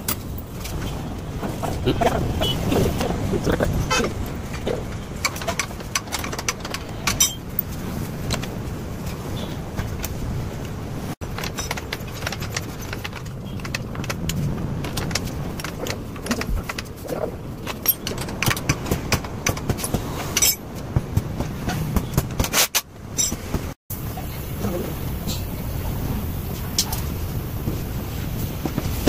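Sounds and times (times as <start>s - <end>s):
hand tools clinking on metal: 3.8s - 8.5s, 17.6s - 20.6s, 22.6s - 23.5s.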